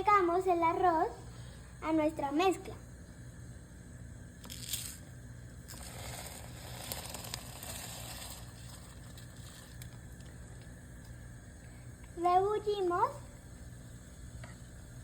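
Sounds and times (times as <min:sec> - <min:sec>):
rice pouring into pot: 0:05.7 - 0:10.2.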